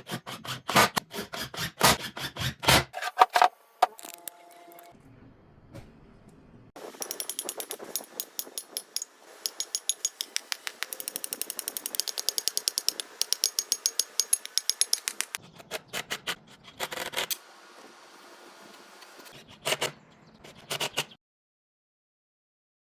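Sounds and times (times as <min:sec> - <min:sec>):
sharp metallic clicks: 0:07.0 - 0:15.4.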